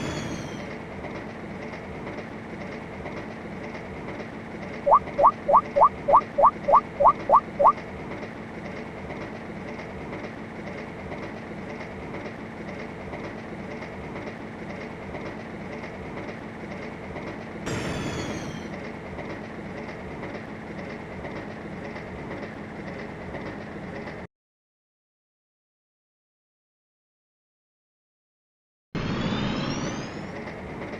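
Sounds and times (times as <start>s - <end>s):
train wheels clickety-clack: 0.0s - 4.8s, 6.3s - 24.3s, 30.2s - 30.9s.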